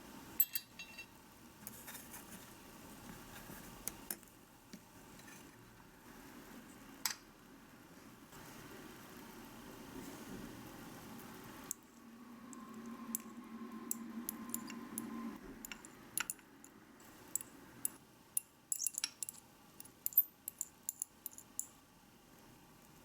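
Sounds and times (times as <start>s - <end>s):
low steady hum: 0.0s - 23.0s
utensils tapping miniature cookware: 0.4s - 1.1s, 12.6s - 21.8s.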